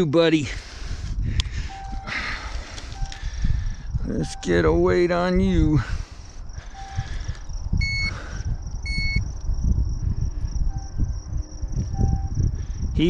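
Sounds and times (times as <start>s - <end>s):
wind and handling rumble: 0.0s - 13.0s
short electronic beeps: 6.8s - 7.1s, 7.8s - 8.2s, 8.9s - 9.2s, 12.0s - 12.3s.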